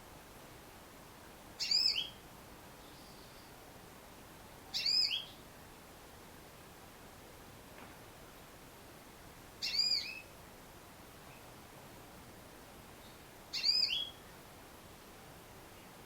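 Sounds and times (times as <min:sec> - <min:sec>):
canary high calls: 0:04.8 - 0:05.2, 0:09.6 - 0:10.2, 0:13.6 - 0:14.1.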